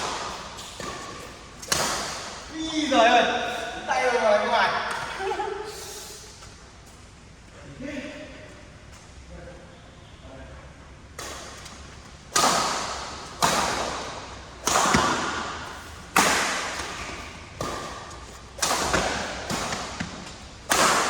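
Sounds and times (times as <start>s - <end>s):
rackets hitting shuttlecock: 0.0s - 2.5s, 11.1s - 21.0s.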